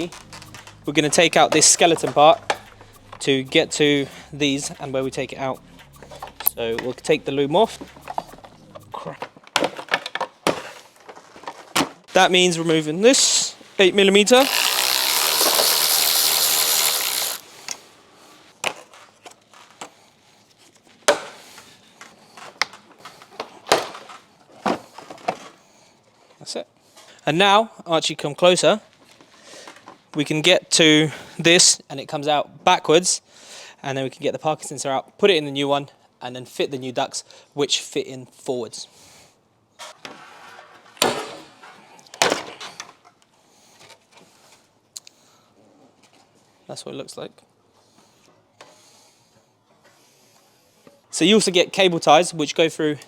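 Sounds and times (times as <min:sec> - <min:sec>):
plastic parts clattering: 0:09.0 - 0:12.1
power tool running: 0:14.5 - 0:17.5.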